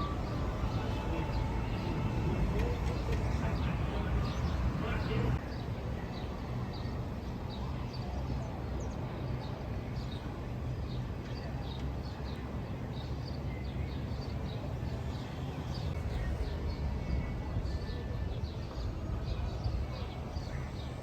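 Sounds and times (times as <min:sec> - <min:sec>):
small birds chirping: 0:00.0 - 0:17.3.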